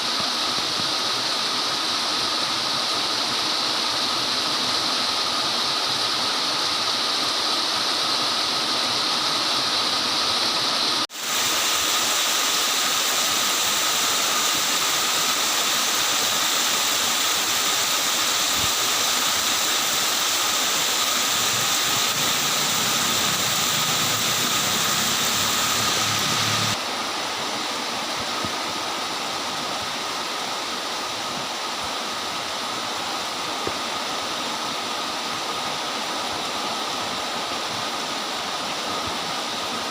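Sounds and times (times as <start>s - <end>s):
heavy rain pouring: 10.8s - 26.8s.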